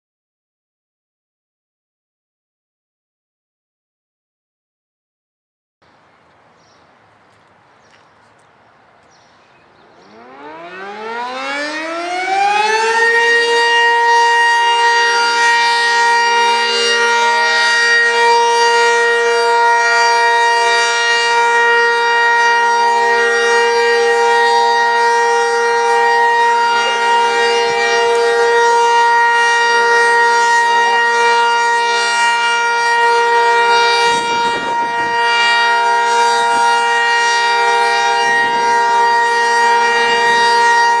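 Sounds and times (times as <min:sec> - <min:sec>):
tornado warning siren wailing: 0:09.8 - 0:41.0.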